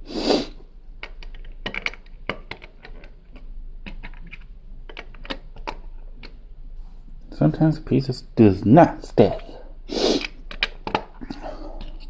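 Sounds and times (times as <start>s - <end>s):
plastic bricks clicking: 1.0s - 6.4s, 10.2s - 11.2s.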